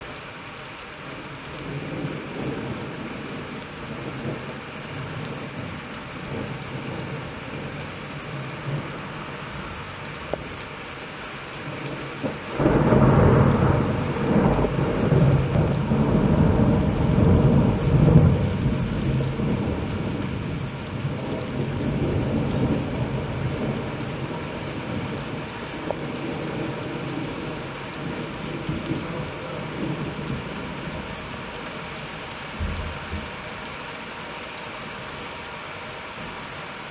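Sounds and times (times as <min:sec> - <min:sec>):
steady rain falling: 0:00.0 - 0:36.9
thunder rumbling: 0:11.6 - 0:33.7.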